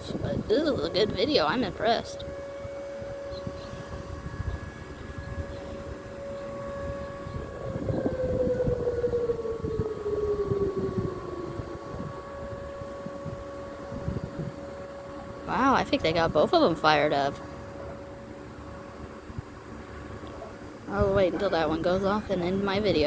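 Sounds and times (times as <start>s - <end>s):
siren steady tone: 0.0s - 23.0s
siren tone sliding down: 0.5s - 14.7s.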